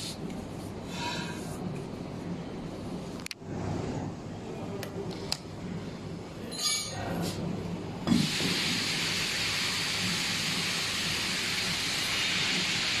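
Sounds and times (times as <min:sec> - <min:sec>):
loud even hiss: 0:08.1 - 0:13.0.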